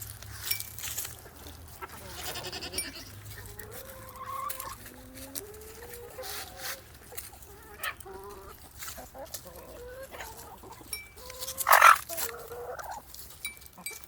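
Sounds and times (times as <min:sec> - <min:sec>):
chickens clucking: 0:01.0 - 0:14.0
goat bleating: 0:01.8 - 0:04.7.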